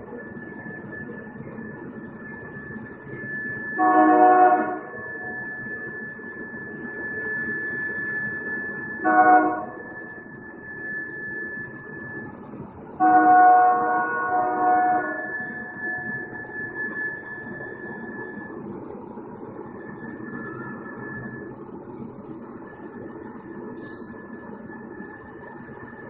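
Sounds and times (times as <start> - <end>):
thin high-pitched whine: 0.0 - 26.0
train horn blasts: 3.8 - 5.4, 9.0 - 9.9, 13.0 - 16.1.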